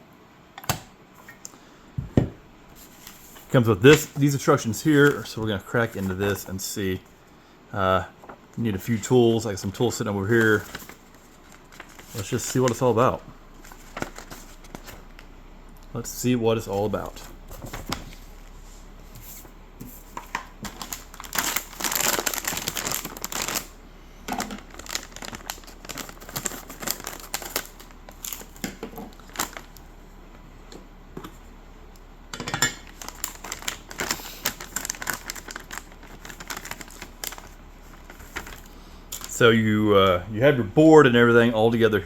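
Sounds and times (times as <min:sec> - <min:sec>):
paper and plastic crinkling: 0:02.7 - 0:07.2, 0:08.2 - 0:15.3, 0:16.5 - 0:18.4, 0:19.2 - 0:29.9, 0:32.4 - 0:39.5.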